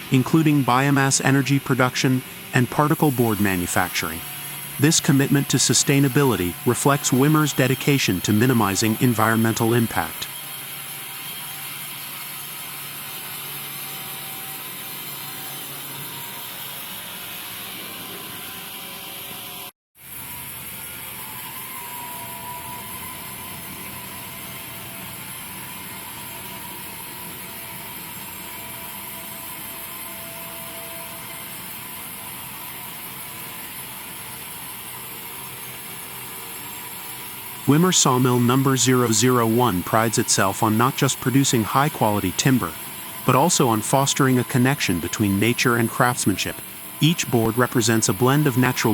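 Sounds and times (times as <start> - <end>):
sawmill machinery hissing: 0.0 - 19.7, 20.3 - 48.9
faint steady whine: 37.6 - 48.9.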